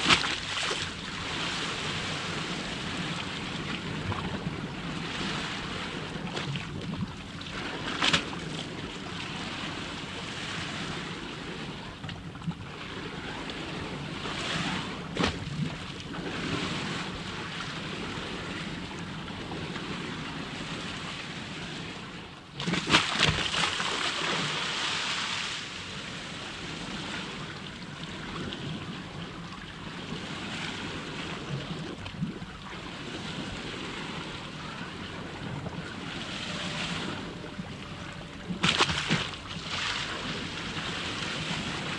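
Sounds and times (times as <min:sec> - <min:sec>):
water washing and sloshing: 0:00.0 - 0:10.9, 0:22.5 - 0:25.8, 0:27.4 - 0:41.9
rush of water: 0:00.0 - 0:11.0, 0:22.6 - 0:41.9.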